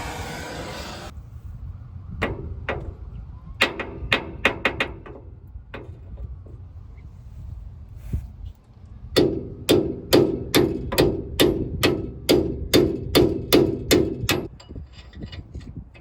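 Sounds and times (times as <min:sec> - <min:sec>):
hammer striking steel: 0:09.2 - 0:14.6.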